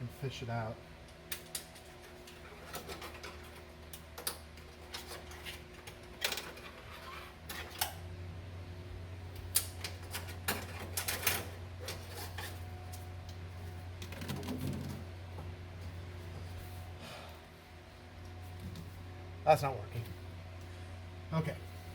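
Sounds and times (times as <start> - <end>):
steady low hum: 0.0 - 21.9.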